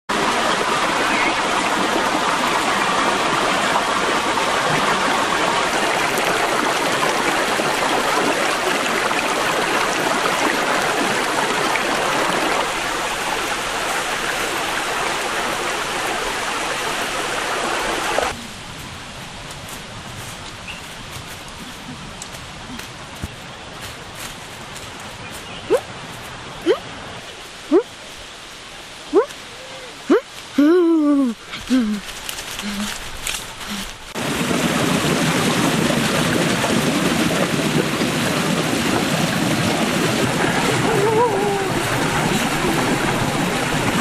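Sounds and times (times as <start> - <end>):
waterfall rushing: 0.1 - 18.7, 33.7 - 44.0.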